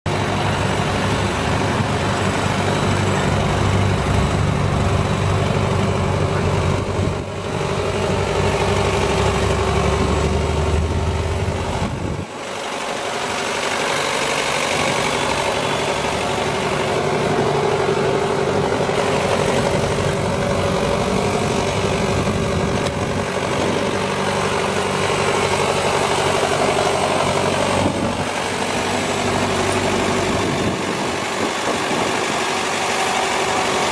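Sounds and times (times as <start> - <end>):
tractor diesel engine idling: 0.1 - 33.9
heavy low rumble: 1.1 - 8.8, 9.4 - 12.4, 16.8 - 32.4.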